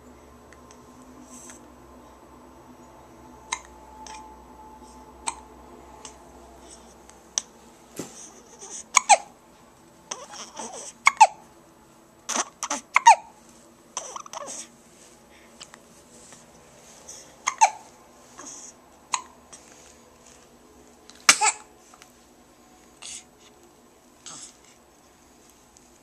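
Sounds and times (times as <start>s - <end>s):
baby hiccupping: 8.6s - 9.3s, 10.1s - 11.4s, 12.3s - 13.3s, 14.0s - 14.7s, 17.4s - 17.9s, 19.1s - 19.4s, 21.3s - 21.7s
baby squeaky vocal sounds: 10.1s - 11.4s, 14.0s - 14.7s, 17.4s - 19.3s.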